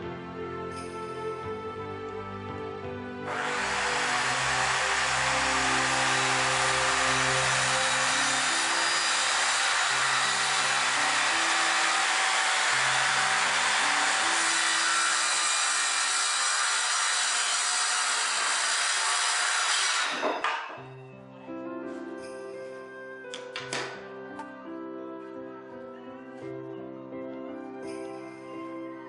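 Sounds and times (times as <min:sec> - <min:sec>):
quiet background music: 0:00.0 - 0:29.0
power tool cutting wood: 0:03.2 - 0:21.0.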